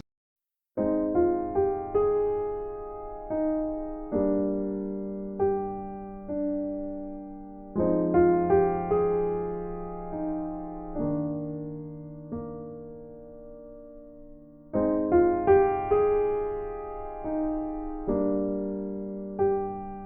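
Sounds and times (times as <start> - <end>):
slow piano music: 0.8 - 20.0.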